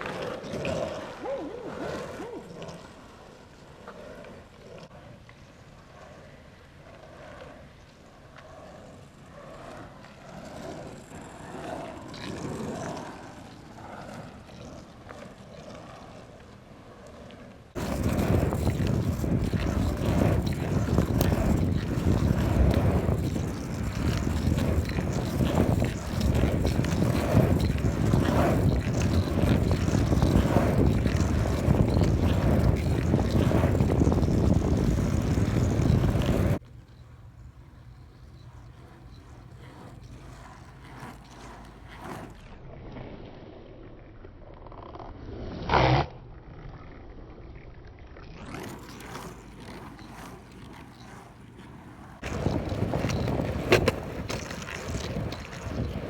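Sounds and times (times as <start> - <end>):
skateboard wheels rolling on pavement: 0.0 - 42.7, 48.3 - 56.0
wind on microphone: 17.8 - 36.6, 52.2 - 56.0.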